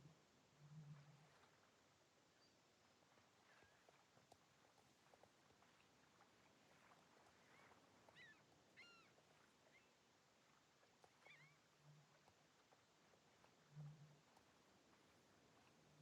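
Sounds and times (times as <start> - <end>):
faint high chirps: 7.5 - 9.1, 11.2 - 11.6.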